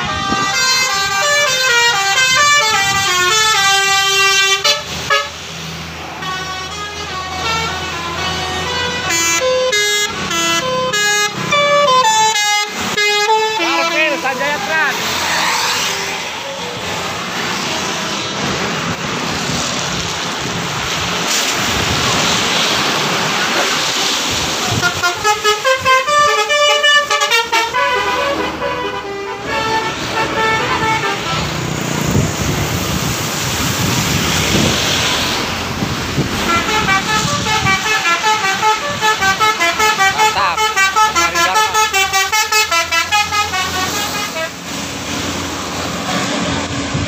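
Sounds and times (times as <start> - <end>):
musical bus horn melody: 0.0 - 5.5, 6.1 - 14.3, 24.7 - 31.6, 36.3 - 44.8
road traffic passing: 0.0 - 47.0.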